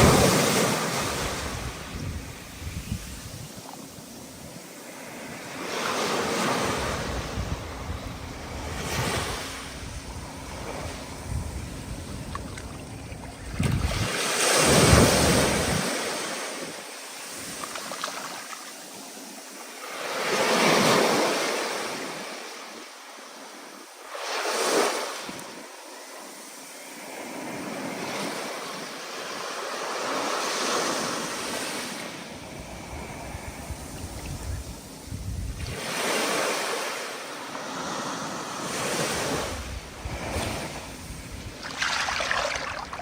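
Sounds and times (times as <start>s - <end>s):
wind noise: 0.0s - 4.6s, 6.2s - 16.8s, 32.4s - 36.3s, 38.9s - 43.0s
waves breaking: 0.0s - 22.8s, 23.6s - 43.0s.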